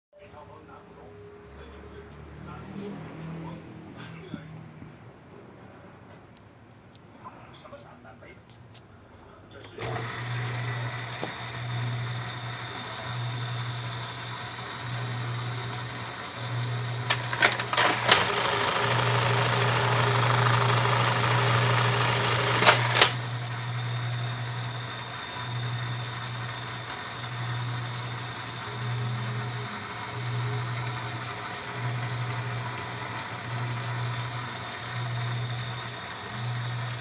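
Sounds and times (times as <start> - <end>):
sewing machine motor humming: 9.7 - 37.0
sewing machine stitching: 9.7 - 37.0
sewing machine clacks: 9.8 - 37.0.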